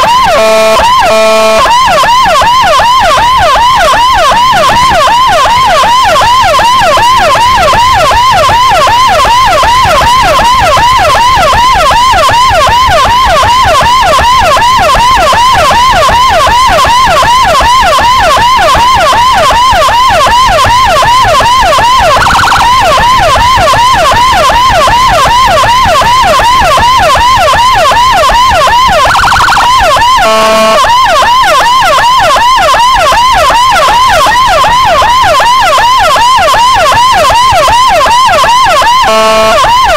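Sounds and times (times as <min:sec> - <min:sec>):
short different siren tone: 0:00.0 - 0:39.9
siren yelping: 0:00.0 - 0:39.9
horn-like blast: 0:00.3 - 0:01.6, 0:30.2 - 0:30.8, 0:39.1 - 0:39.6.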